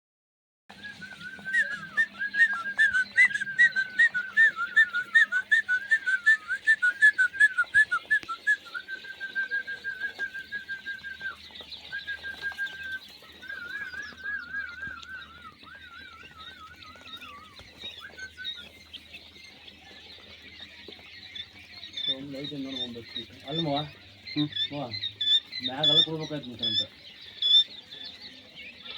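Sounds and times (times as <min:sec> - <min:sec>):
person whistling: 0:00.7 - 0:11.4, 0:12.0 - 0:18.7
quail chirping: 0:00.7 - 0:28.9.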